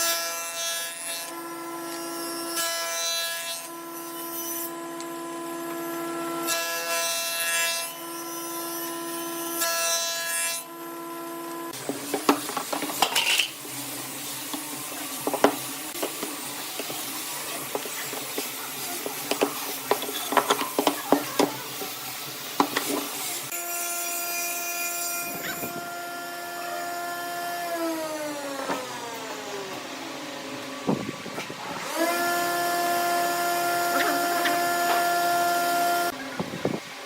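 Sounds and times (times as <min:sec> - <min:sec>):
lathe motor whine: 0:25.3 - 0:37.0.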